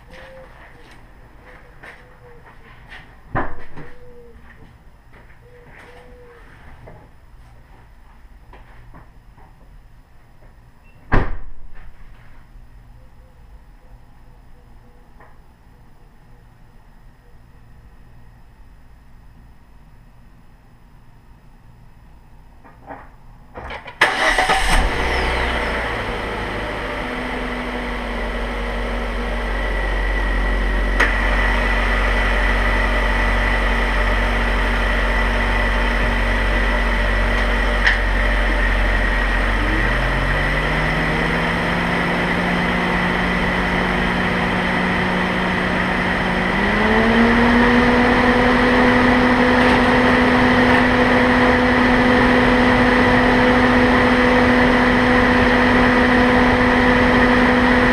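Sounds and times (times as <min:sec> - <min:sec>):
car engine starting and running: 0:23.6 - 0:57.9.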